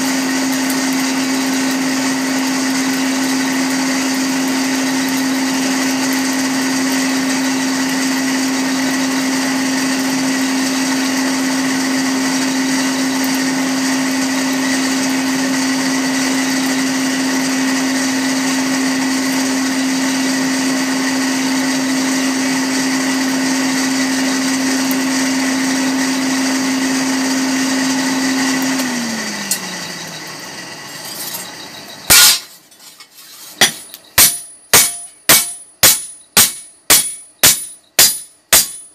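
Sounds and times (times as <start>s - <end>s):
electric blower humming: 0.0s - 32.5s
hammer striking metal on anvil: 32.1s - 32.6s, 33.6s - 38.9s.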